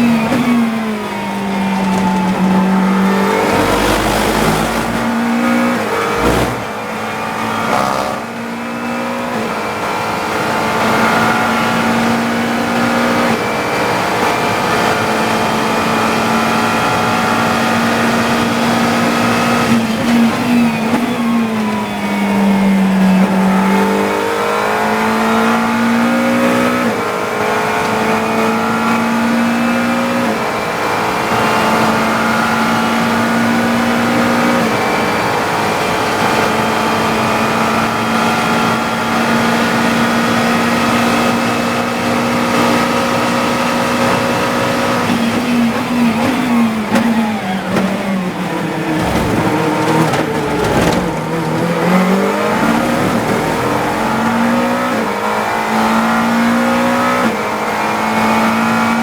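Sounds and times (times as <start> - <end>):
race car engine revving high: 0.0 - 59.0
thump: 6.1 - 6.8.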